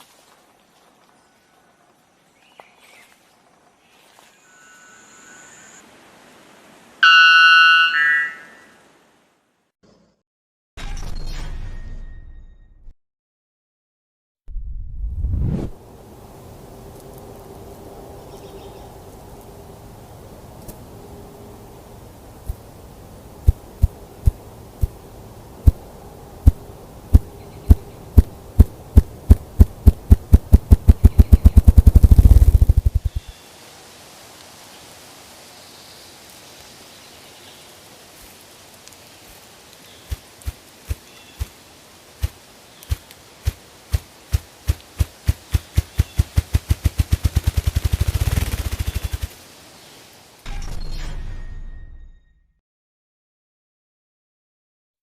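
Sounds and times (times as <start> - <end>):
grouse drumming wing thumps: 26.5 - 33.3, 42.2 - 49.4
bird drumming thumps: 27.2 - 33.3.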